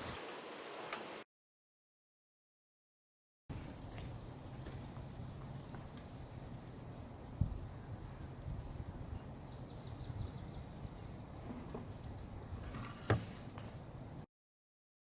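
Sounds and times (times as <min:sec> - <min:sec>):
low outdoor rumble: 0:03.5 - 0:14.2.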